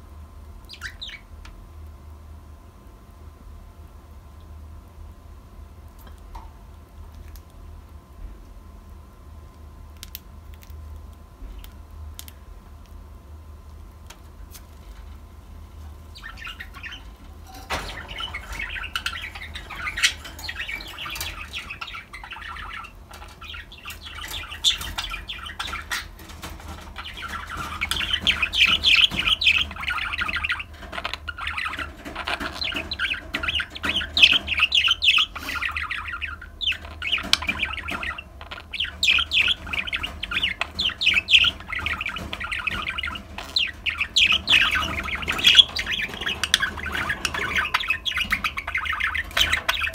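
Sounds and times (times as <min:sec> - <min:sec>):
low steady hum: 0:00.0 - 0:49.9
budgerigars chattering and warbling: 0:00.7 - 0:01.3, 0:15.8 - 0:49.9.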